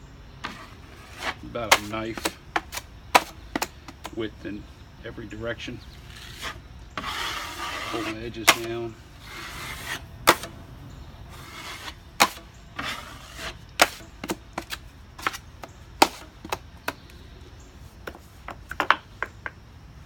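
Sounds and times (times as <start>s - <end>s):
drywall knife scraping mud: 0.4s - 4.2s, 5.9s - 10.5s, 11.3s - 16.6s.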